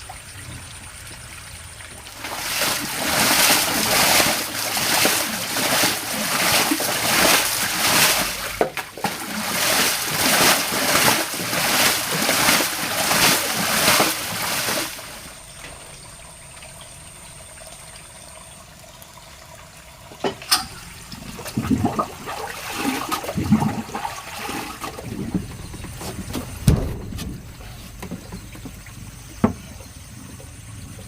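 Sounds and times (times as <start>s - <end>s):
rhythmic water splashing: 0.0s - 31.0s
low knocks: 24.9s - 29.7s.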